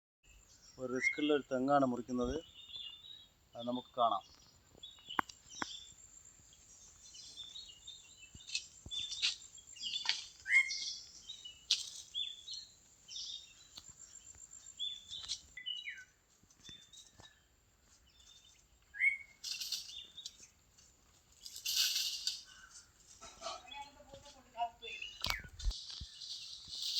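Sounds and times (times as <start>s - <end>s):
birds chirping: 0.2s - 26.9s
sharp clicks: 25.2s - 25.8s.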